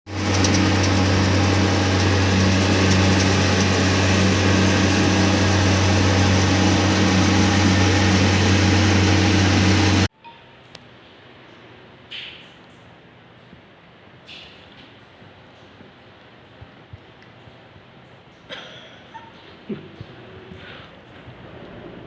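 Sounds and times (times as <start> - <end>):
motorcycle engine running: 0.1 - 10.1.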